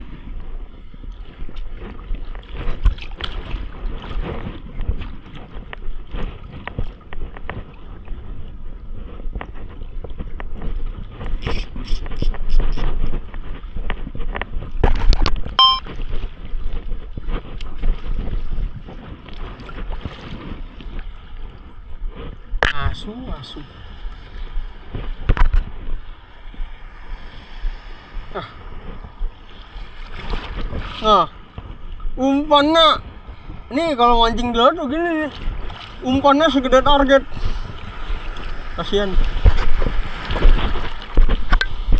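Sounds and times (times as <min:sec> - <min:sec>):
wind buffeting microphone: 0:00.0 - 0:41.9
steady low rumble: 0:21.0 - 0:41.9.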